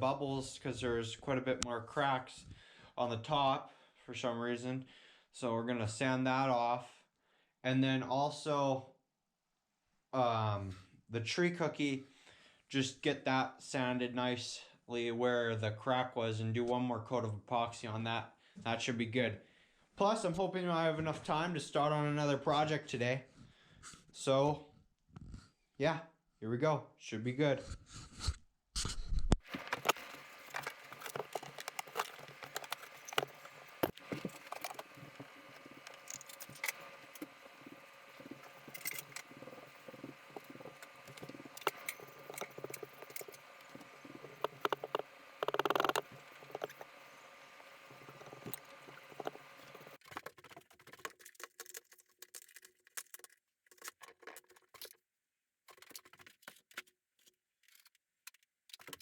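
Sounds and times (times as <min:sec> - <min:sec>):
clicks taps and scrapes of hand work: 0:29.4 - 0:55.0, 0:55.7 - 0:59.0.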